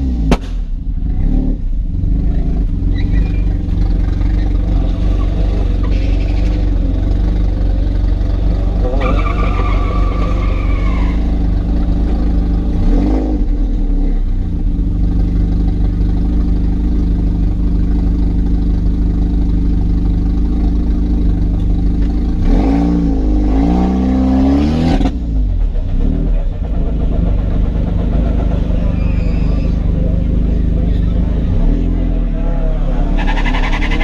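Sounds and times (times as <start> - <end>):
car engine running: 0.0 - 34.0
engine revving: 0.0 - 34.0
high whistle: 28.9 - 29.8.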